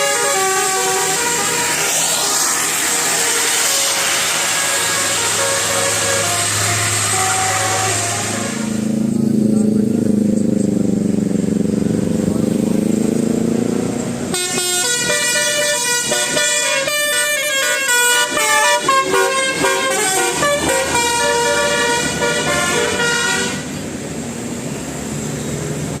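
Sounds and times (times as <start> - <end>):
multi-trumpet air horn melody: 0.0 - 8.9, 14.3 - 23.8
traffic noise: 0.0 - 26.0.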